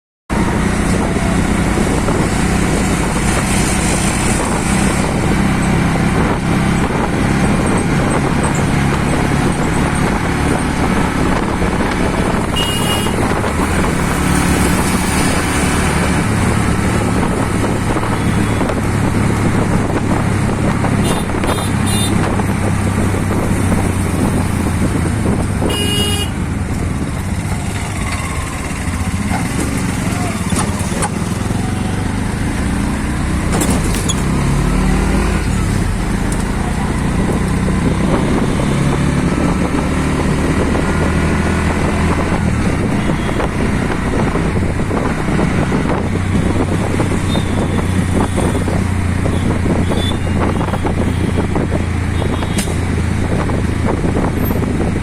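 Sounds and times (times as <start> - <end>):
horn toots: 12.4 - 13.8, 21.0 - 22.3, 25.6 - 26.4.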